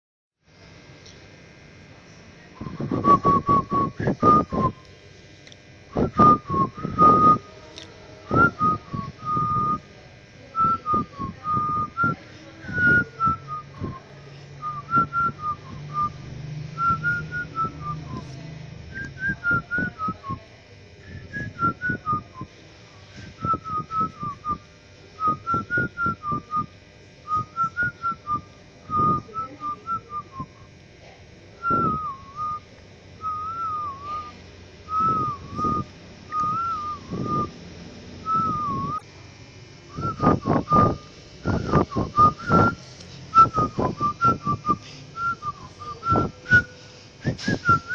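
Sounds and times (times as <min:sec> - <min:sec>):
person whistling: 0:33.2 - 0:35.8, 0:36.4 - 0:37.5, 0:38.3 - 0:39.0, 0:40.0 - 0:47.9.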